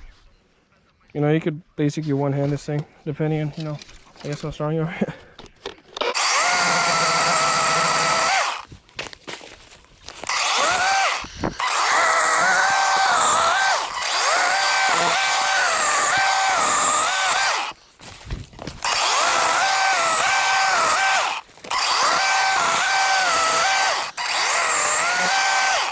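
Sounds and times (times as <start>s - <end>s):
electric chainsaw cutting wood: 6.0s - 8.7s, 10.2s - 17.8s, 18.6s - 25.9s.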